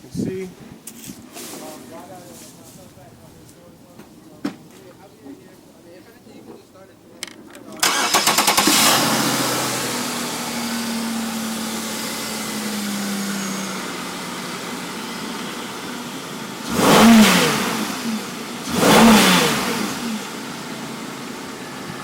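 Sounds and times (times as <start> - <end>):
car engine idling and revving: 7.8 - 22.0.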